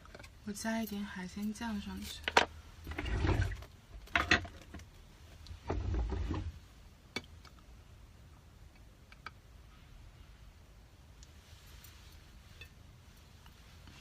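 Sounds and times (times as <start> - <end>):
rustling and scraping: 1.9 - 6.7, 11.3 - 14.0.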